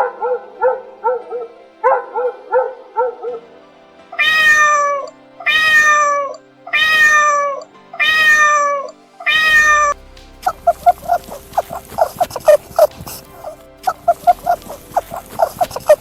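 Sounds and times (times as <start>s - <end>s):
cat meowing: 4.2s - 10.0s.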